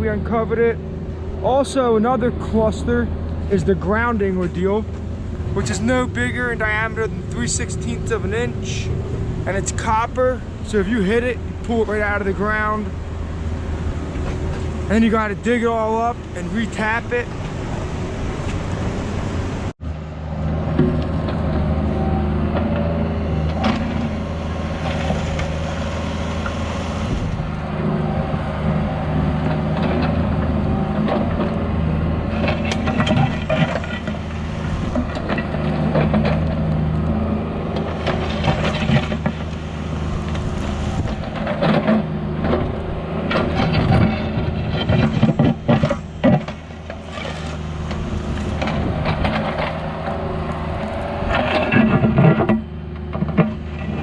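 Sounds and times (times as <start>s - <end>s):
diesel engine running: 0.0s - 54.0s
excavator bucket clanking and scraping: 20.5s - 54.0s.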